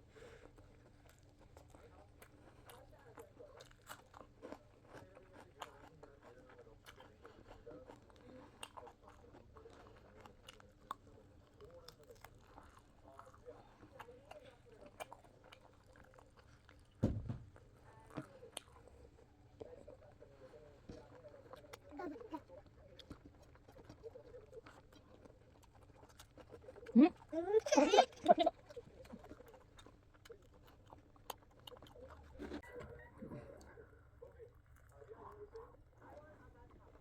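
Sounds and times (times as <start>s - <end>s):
chewing and crunching food: 0.0s - 37.0s
dull thump: 17.0s - 17.5s.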